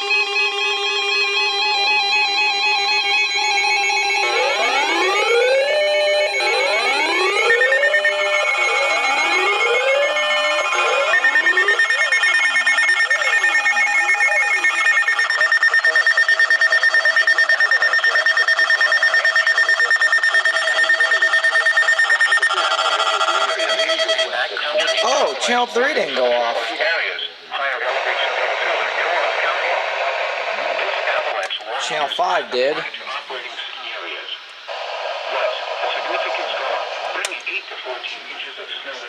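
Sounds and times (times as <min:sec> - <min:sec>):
sweeping siren tones: 0:00.0 - 0:26.8
rapidly pulsing high tone: 0:00.0 - 0:26.9
layered steady alarm tones: 0:00.0 - 0:27.0.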